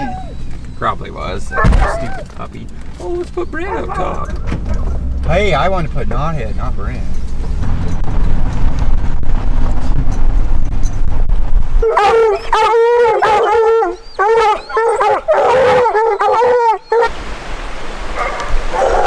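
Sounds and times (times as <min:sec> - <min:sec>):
hounds howling: 0:00.0 - 0:02.3, 0:03.0 - 0:05.0, 0:11.8 - 0:17.1, 0:18.2 - 0:19.0
low rumble: 0:01.5 - 0:12.4.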